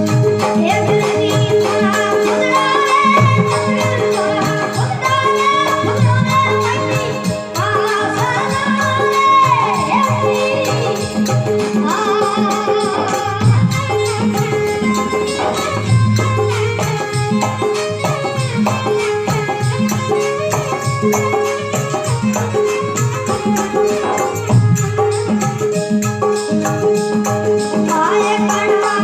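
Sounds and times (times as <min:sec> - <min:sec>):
hand drum rhythm: 0:00.0 - 0:29.0
rattle-like percussion: 0:00.0 - 0:29.0
folk melody: 0:11.7 - 0:27.2.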